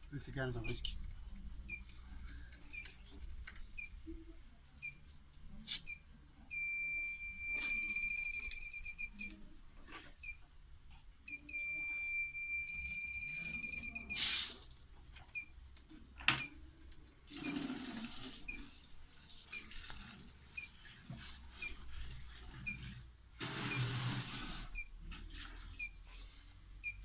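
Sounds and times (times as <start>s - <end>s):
burst of hiss: 14.2s - 14.6s.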